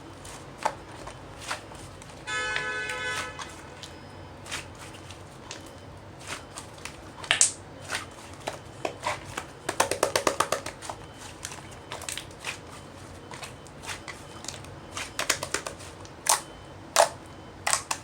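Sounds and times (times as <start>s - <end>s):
slime sticky clicks and pops: 7.2s - 7.6s, 14.5s - 18.0s.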